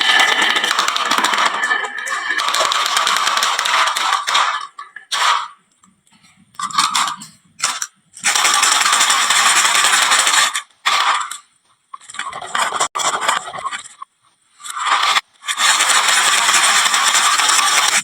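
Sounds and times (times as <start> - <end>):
marbles rattling down wooden run: 0.0 - 5.4, 14.8 - 18.0.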